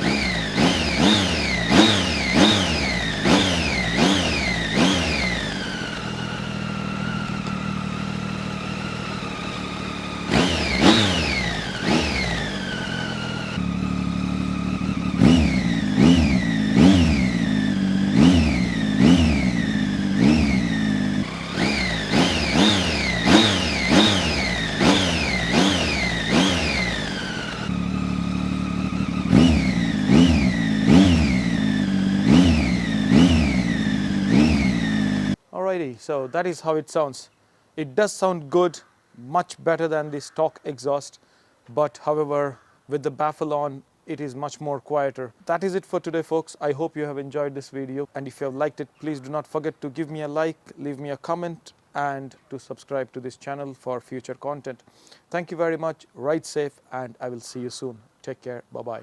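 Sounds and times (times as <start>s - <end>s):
motorcycle engine idling: 0.0s - 35.4s
motorcycle engine revving: 0.0s - 35.4s.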